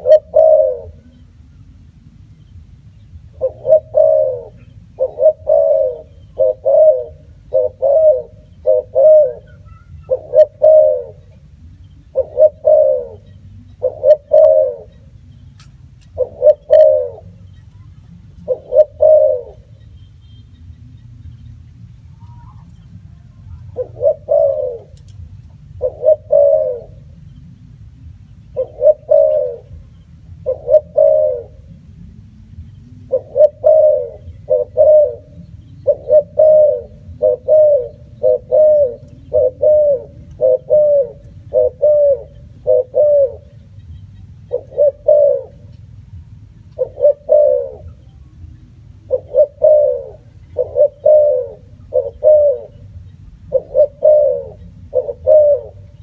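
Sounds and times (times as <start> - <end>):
dove cooing: 0.0 - 56.0
low steady hum: 0.0 - 56.0.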